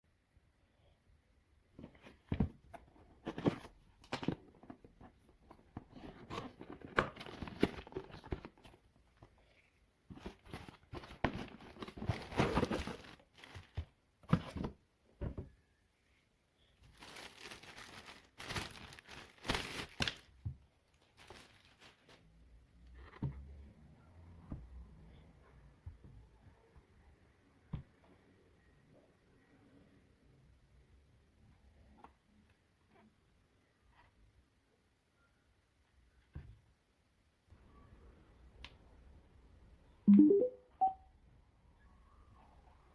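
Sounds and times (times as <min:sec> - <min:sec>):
packaging crinkling and tearing: 0:16.9 - 0:20.3, 0:21.0 - 0:22.2.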